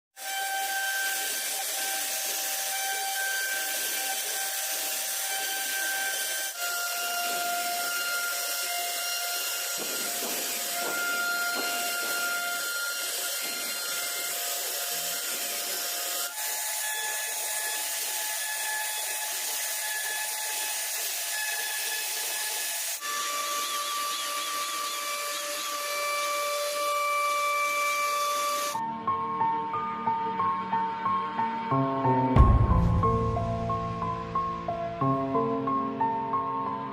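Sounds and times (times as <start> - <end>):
bit cutting wood hissing: 0.2 - 28.8
router spindle whine: 0.2 - 28.8.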